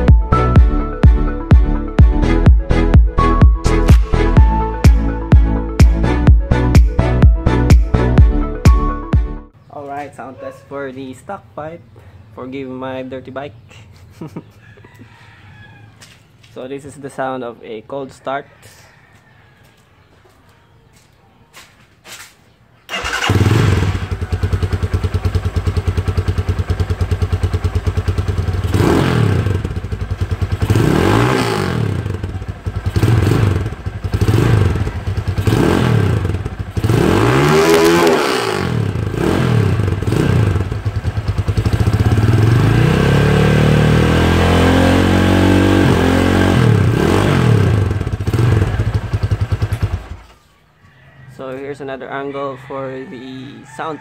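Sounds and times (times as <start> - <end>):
motorcycle engine idling and revving: 22.9 - 50.7.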